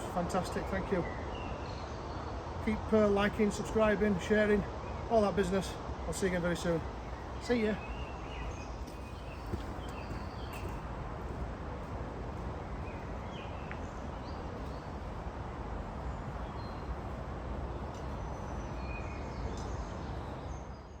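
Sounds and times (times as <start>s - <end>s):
small birds chirping: 3.6s - 11.0s, 12.7s - 21.0s.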